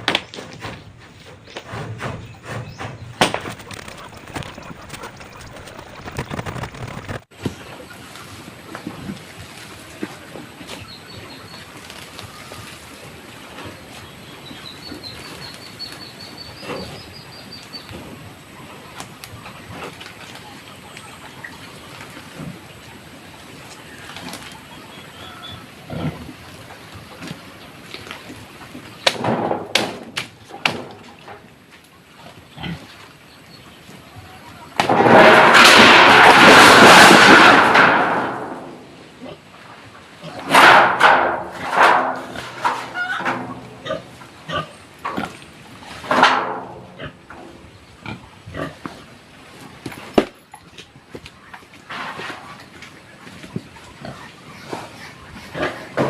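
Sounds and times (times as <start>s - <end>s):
knocks and rustling: 0.0s - 7.8s, 28.0s - 31.6s, 34.8s - 38.9s, 40.3s - 47.7s
pig squealing loudly: 42.8s - 44.6s.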